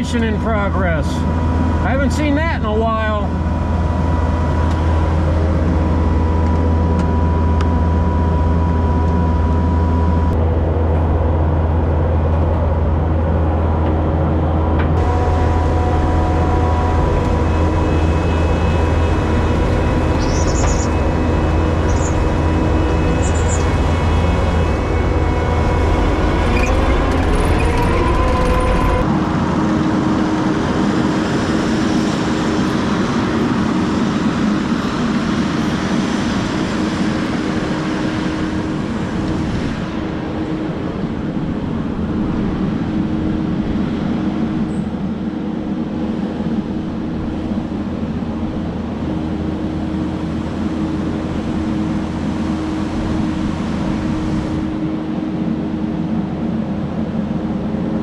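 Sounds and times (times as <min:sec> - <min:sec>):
track loader diesel engine: 0:00.0 - 0:30.3
short high squeaks: 0:26.3 - 0:29.0.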